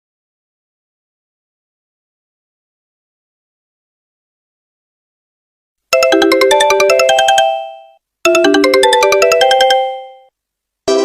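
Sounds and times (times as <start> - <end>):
mobile phone ringtone melody: 5.9 - 10.3.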